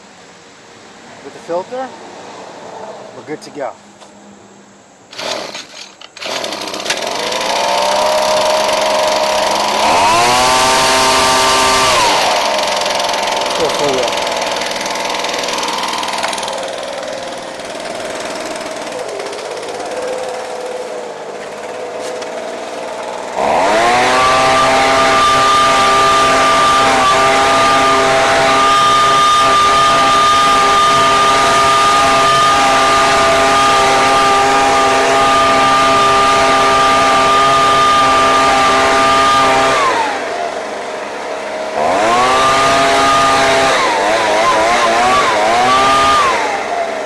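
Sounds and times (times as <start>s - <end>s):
leaf blower engine running: 5.1s - 47.0s
rush of blown air: 7.2s - 23.4s.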